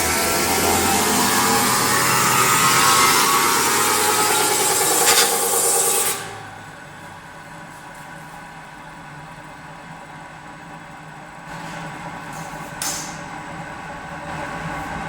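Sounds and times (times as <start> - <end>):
metal spinning roller hissing and ringing: 4.5 - 5.8.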